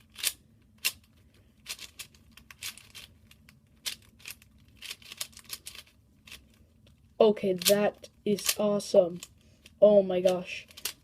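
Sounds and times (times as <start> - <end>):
speed cube plastic clicks: 0.0 - 6.5, 7.5 - 7.8, 8.4 - 11.0.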